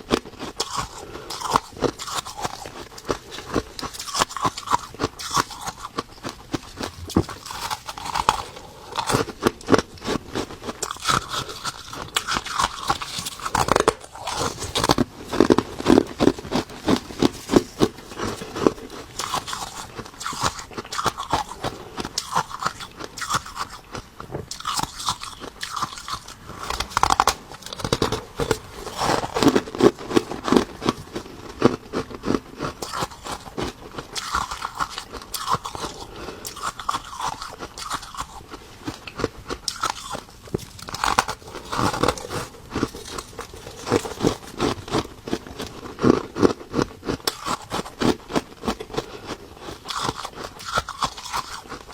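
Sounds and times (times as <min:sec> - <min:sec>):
ice crunching while chewed: 0:00.0 - 0:51.9.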